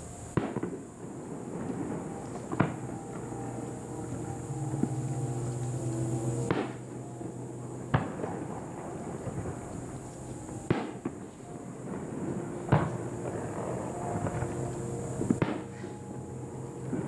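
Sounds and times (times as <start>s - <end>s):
firework shells booming: 0.0s - 5.0s, 6.4s - 17.0s
firework pops and crackle: 0.3s - 3.2s, 9.2s - 11.4s.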